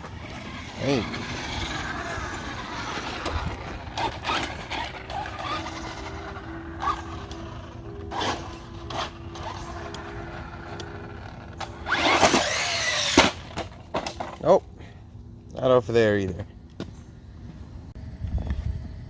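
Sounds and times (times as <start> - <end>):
toy truck drivetrain clicking: 0.0 - 14.5.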